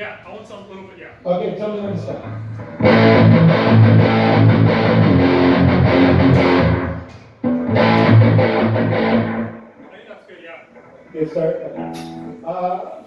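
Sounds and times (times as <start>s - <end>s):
electric guitar strummed chords: 2.2s - 9.8s, 11.7s - 12.4s.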